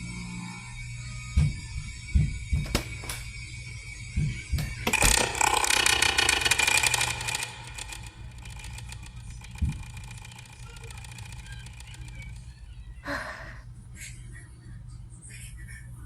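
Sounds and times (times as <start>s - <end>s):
heavy thumps: 4.2s - 12.5s
loud rattling creak: 4.6s - 13.5s.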